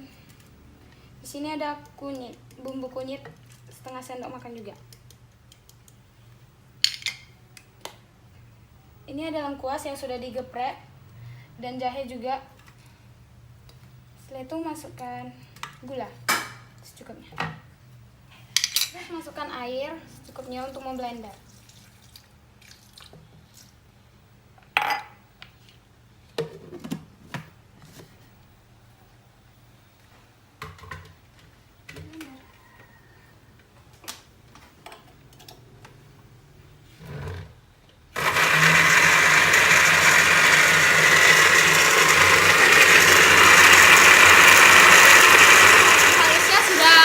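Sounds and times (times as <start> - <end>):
electric blender grinding: 38.2 - 47.0.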